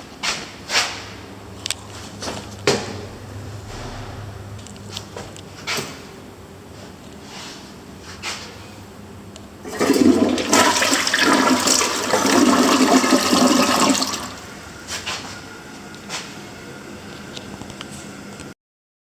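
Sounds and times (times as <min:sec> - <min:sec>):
toilet flushing: 0:09.6 - 0:15.2.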